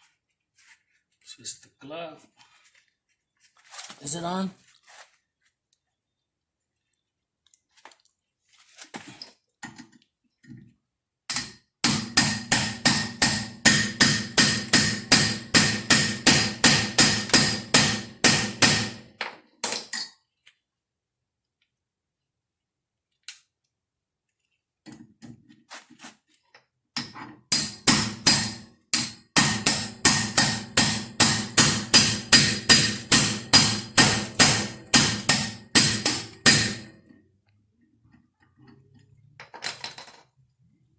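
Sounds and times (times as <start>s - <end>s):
hammer striking impact driver: 11.3s - 19.1s, 27.0s - 36.9s.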